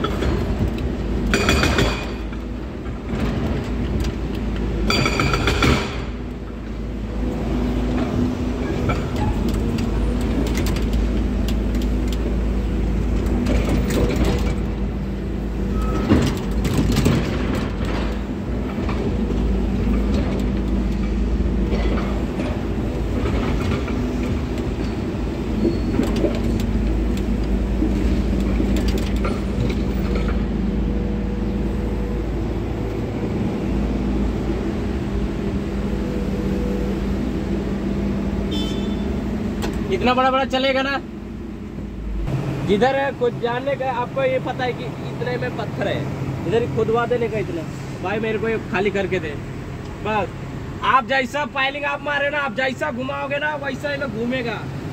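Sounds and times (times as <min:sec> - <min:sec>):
metal clanks and knocks: 0:00.0 - 0:06.2, 0:13.1 - 0:14.9, 0:15.9 - 0:30.5
diesel construction machinery engine: 0:00.0 - 0:54.9.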